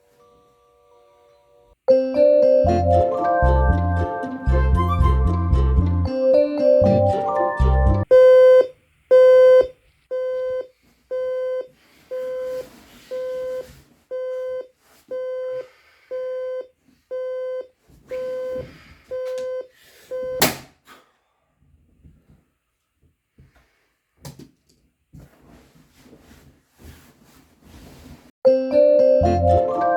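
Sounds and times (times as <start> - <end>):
alarm clock beeping: 6.6 - 14.6
loud sharp knock: 20.4 - 20.8.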